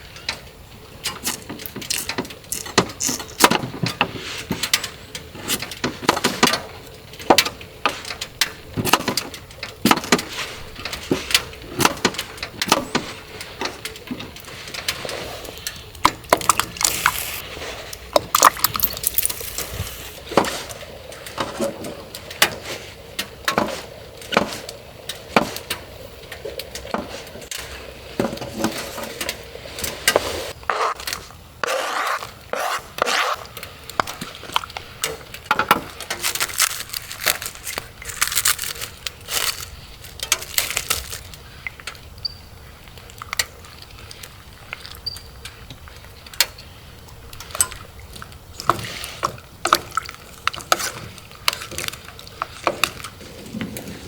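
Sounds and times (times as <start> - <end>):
rain hissing: 14.6 - 21.1.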